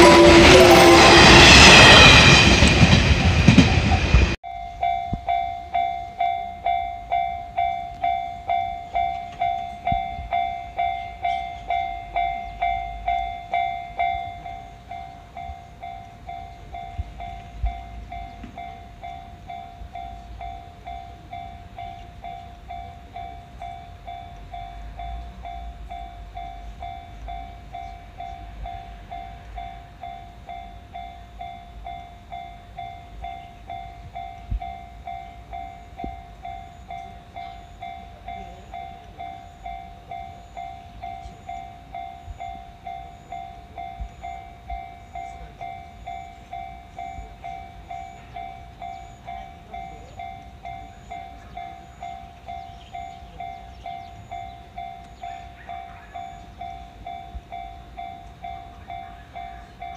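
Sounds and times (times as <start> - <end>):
railroad crossing bell ringing: 0.0 - 59.9
train rumbling past: 0.0 - 59.9.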